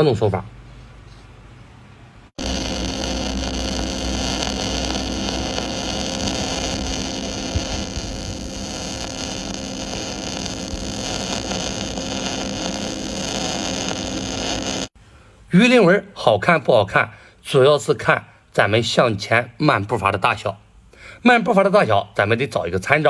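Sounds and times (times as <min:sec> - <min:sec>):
steady hum: 0:02.4 - 0:14.9
welding arc hissing and crackling: 0:02.4 - 0:15.0.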